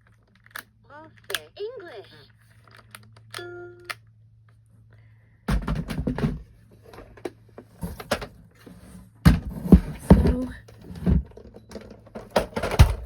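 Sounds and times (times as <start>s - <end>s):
handling knocks and rustling: 5.5s - 13.0s.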